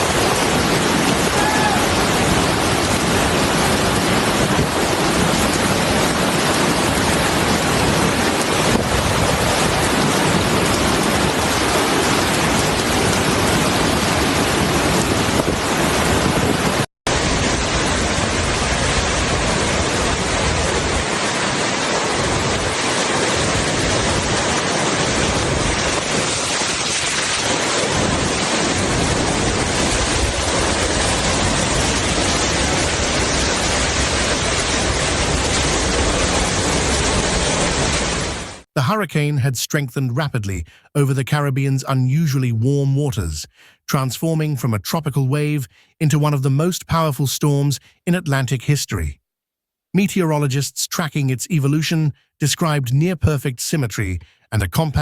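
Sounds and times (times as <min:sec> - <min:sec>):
heavy rain: 0:00.0 - 0:38.7
hurricane wind: 0:00.0 - 0:38.7.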